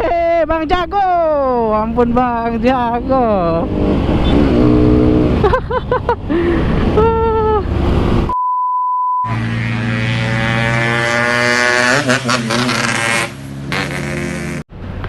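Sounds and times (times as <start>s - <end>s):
motorcycle engine revving: 0.6s - 5.6s, 9.3s - 14.7s
steady beep tone: 8.3s - 9.3s.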